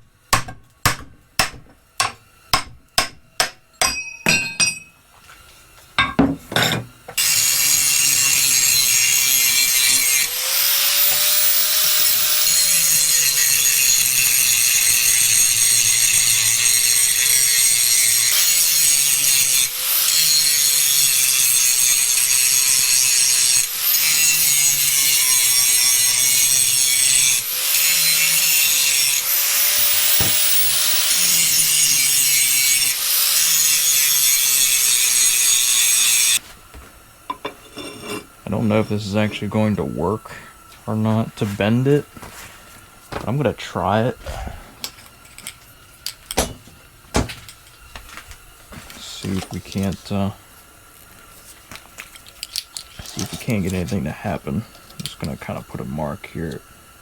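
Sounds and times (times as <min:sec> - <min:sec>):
power tool cutting steel: 0:06.6 - 0:36.4.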